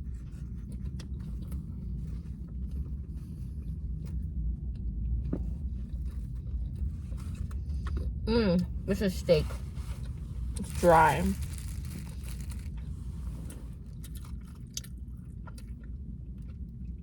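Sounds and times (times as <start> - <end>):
low rumble: 0.0 - 17.0
person chewing: 9.6 - 17.0.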